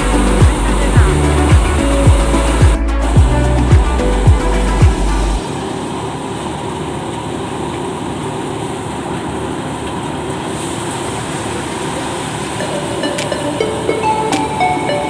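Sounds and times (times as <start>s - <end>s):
thresher machine running: 0.0s - 14.7s.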